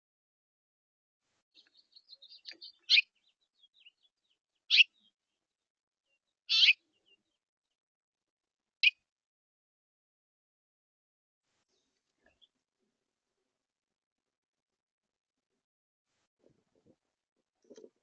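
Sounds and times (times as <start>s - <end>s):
songbirds twittering: 1.5s - 5.4s, 6.1s - 7.4s
sharp bird calls: 1.6s - 5.2s, 6.5s - 7.4s.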